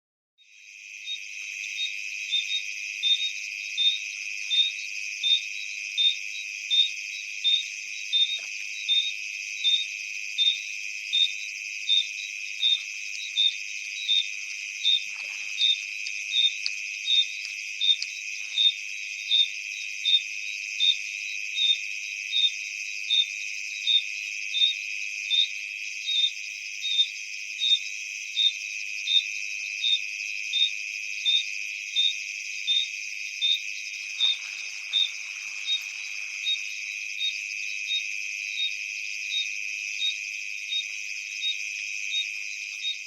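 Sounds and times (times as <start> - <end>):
insect chorus: 0.4 - 43.0
sharp repeating chirp: 11.2 - 19.5.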